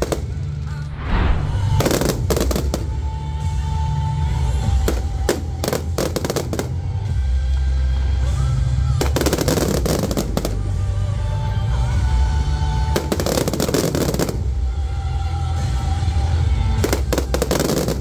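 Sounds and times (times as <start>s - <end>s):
fireworks bangs: 0.0s - 3.0s
fireworks crackling: 0.0s - 3.0s.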